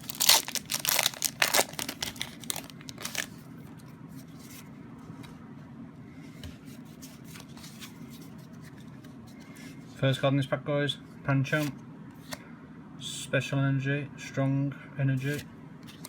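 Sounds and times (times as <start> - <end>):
foil wrapper tearing and crinkling: 0.0 - 3.4.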